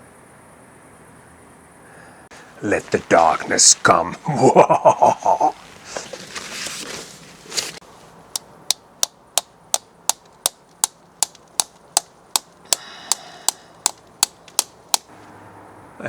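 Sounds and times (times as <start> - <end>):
brief rustle: 5.5 - 8.5
sharp evenly spaced clicks: 8.4 - 15.1.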